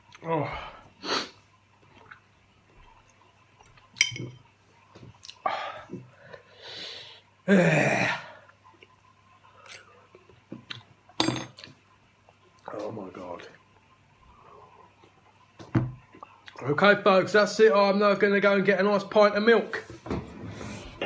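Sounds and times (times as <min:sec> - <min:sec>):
man sniffing: 0:01.0 - 0:01.4.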